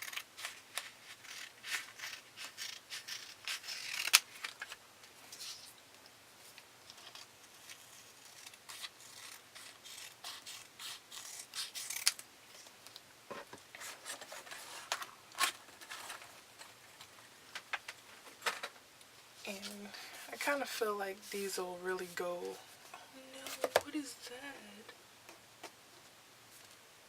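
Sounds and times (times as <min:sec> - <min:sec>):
scissors snipping paper: 0:00.0 - 0:04.5, 0:06.9 - 0:12.2
paper rustling: 0:13.7 - 0:17.2.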